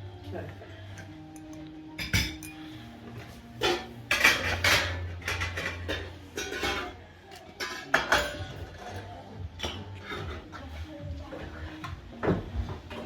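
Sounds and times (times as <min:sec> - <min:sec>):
faint background music: 0:00.0 - 0:13.0
crockery and cutlery clinking: 0:00.9 - 0:12.0.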